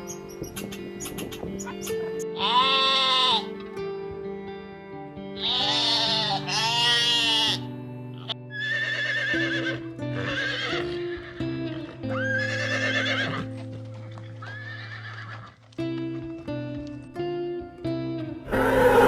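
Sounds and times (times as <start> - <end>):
background music with steady chords: 0.0 - 13.8
farm animal calling: 1.6 - 3.5, 5.4 - 11.5, 14.3 - 15.6, 18.5 - 19.0.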